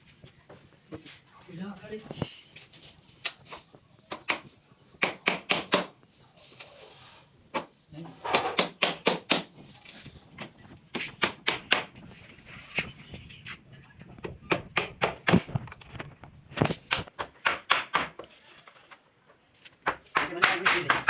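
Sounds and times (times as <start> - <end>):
tool striking wood: 16.9 - 18.3, 19.8 - 21.0.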